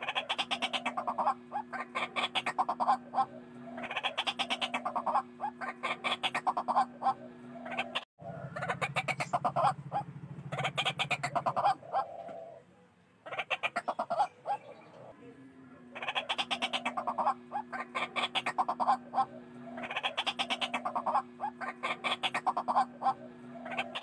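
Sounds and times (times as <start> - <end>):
bird croaking calls: 0.0 - 24.0
low hum: 2.8 - 3.9, 6.6 - 12.0, 18.8 - 21.7, 22.6 - 23.9.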